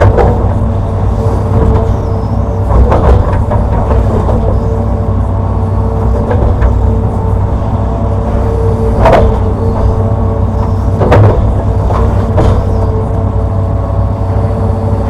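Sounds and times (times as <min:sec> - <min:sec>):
excavator diesel engine running: 0:00.0 - 0:15.0
hydraulic whine: 0:00.0 - 0:15.0
bucket scraping and knocking earth: 0:08.7 - 0:13.2.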